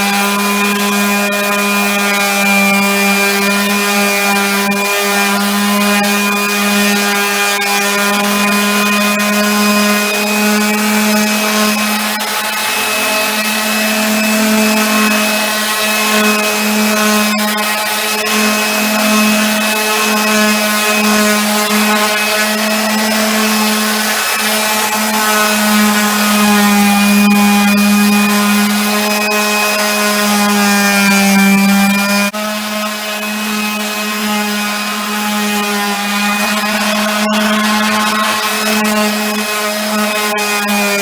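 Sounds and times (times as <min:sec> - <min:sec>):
electric sander motor hum: 0:00.0 - 0:41.0.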